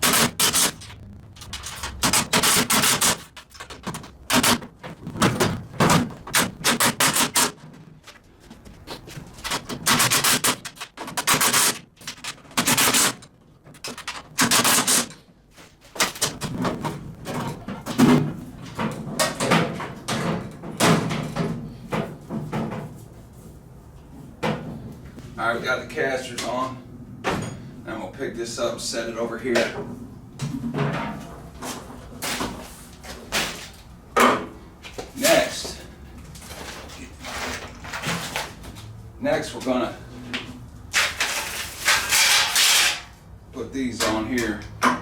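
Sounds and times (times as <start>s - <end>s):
rapid clicking and rattling hardware: 0.0s - 7.9s, 9.0s - 15.3s.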